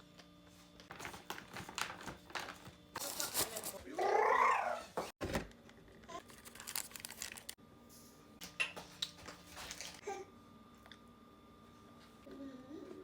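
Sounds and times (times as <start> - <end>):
wrapper crinkling: 0.9 - 3.8, 6.2 - 7.6.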